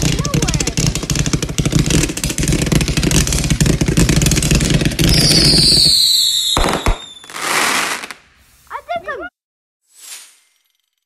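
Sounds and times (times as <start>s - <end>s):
fireworks crackling: 0.0s - 9.3s
sharp firework pops: 6.4s - 8.2s.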